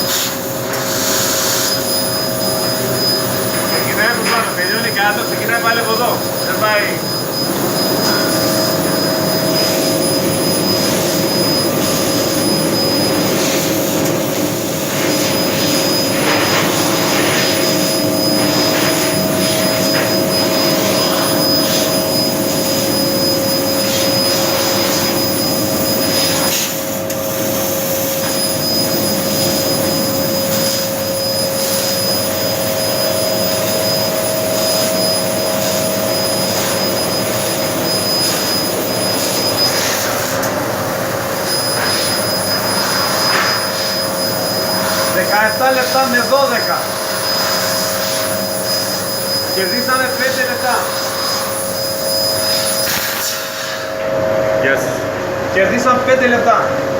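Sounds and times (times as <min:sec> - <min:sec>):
laser cutter hum and hiss: 0:00.0 - 0:56.9
thin high whistle: 0:01.0 - 0:14.0, 0:14.8 - 0:40.5, 0:41.3 - 0:54.1.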